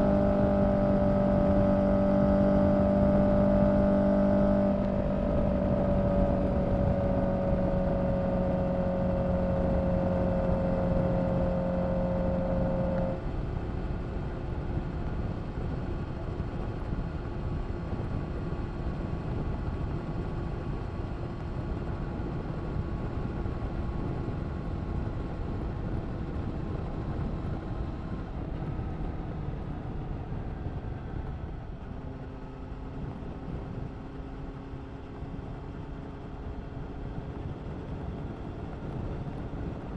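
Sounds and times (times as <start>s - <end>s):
motorcycle engine running: 0.0s - 39.9s
steady engine tone: 0.0s - 39.9s.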